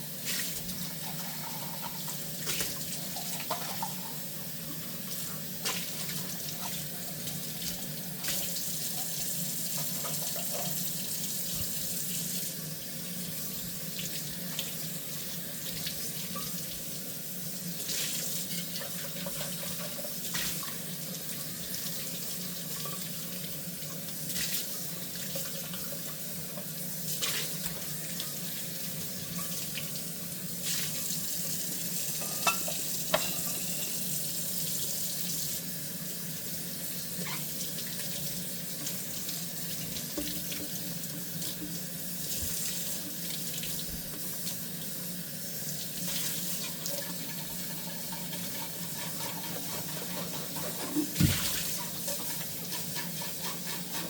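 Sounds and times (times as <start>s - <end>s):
dishware clinking: 32.2s - 33.9s
tap running into sink: 39.8s - 42.7s, 48.1s - 54.0s.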